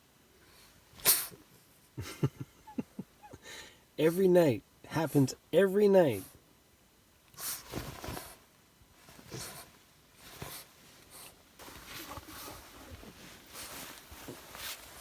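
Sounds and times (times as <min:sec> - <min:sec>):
scuffling: 0:09.0 - 0:15.0.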